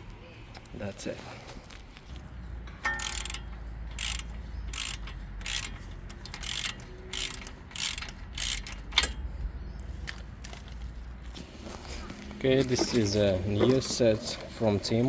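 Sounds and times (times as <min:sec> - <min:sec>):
sharp metal click: 0:02.7 - 0:09.4
ratchet wrench rasping: 0:02.8 - 0:10.3.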